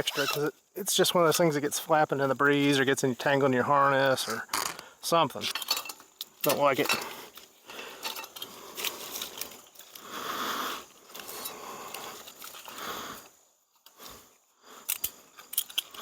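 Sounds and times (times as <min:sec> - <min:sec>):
man breathing heavily: 0:07.0 - 0:15.4.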